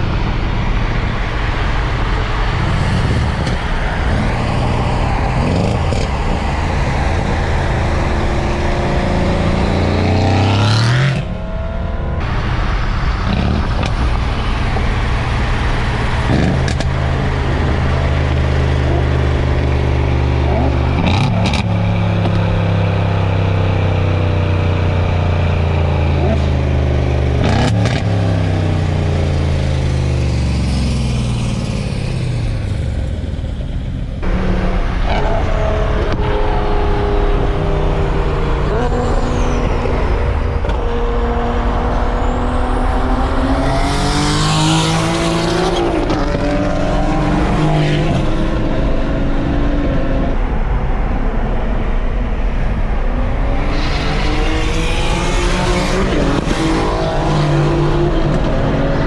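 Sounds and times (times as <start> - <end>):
car engine revving: 0.0 - 59.0.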